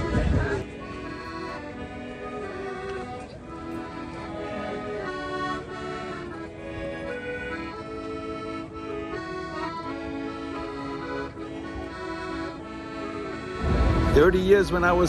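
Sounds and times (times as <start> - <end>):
accordion music: 0.0 - 15.0.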